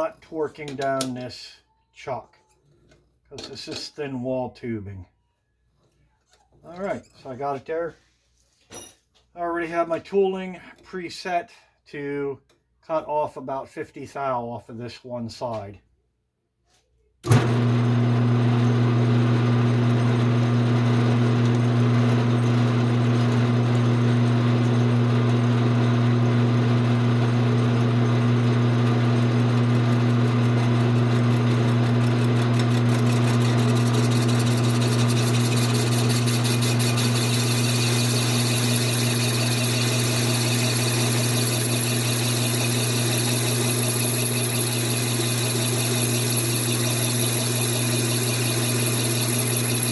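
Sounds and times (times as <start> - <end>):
metal lathe motor hum: 17.3 - 49.9.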